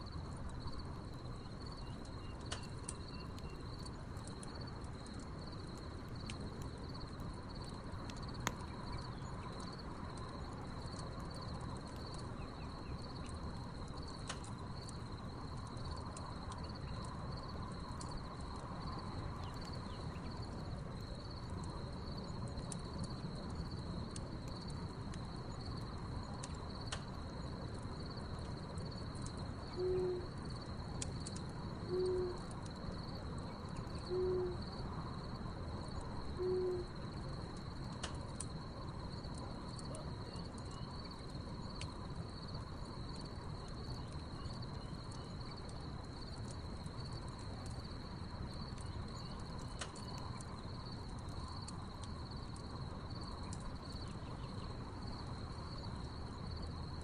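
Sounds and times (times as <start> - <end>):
wood fire crackling: 0.0 - 57.0
crickets chirring: 0.1 - 57.0
owl hooting: 29.8 - 30.2, 31.9 - 32.4, 34.1 - 34.6, 36.4 - 36.8.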